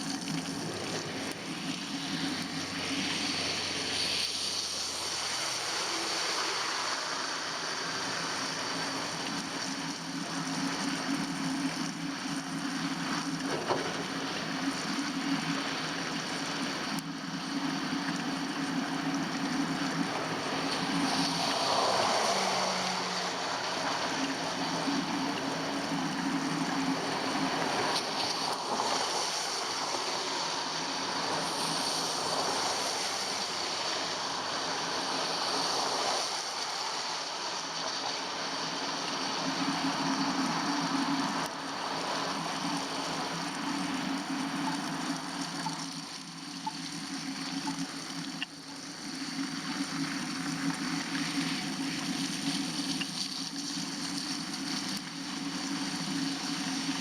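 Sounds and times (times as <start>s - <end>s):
bicycle tyres on slushy road: 0.0s - 17.0s, 17.6s - 57.0s.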